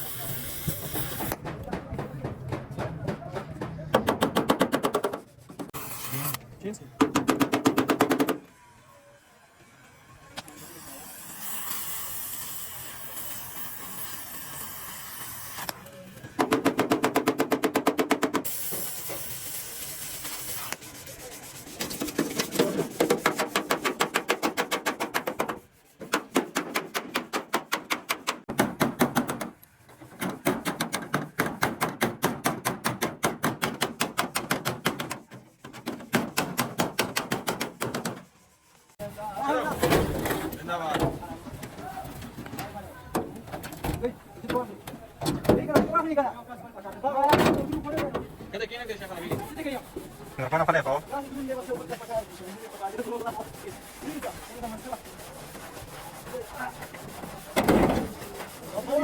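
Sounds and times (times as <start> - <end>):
hiss: 0.0 - 1.3, 10.5 - 15.7, 18.4 - 21.4
rapid hammering on metal: 1.2 - 5.7, 7.0 - 8.4, 16.4 - 18.5, 22.2 - 29.6, 30.2 - 38.2.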